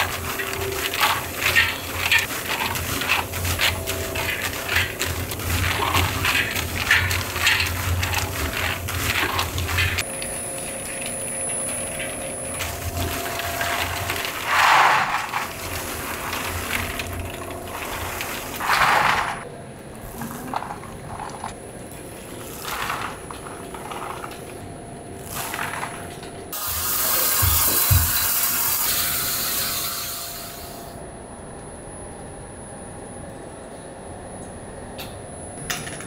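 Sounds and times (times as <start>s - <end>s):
machinery clatter and rustling: 0.0s - 19.5s.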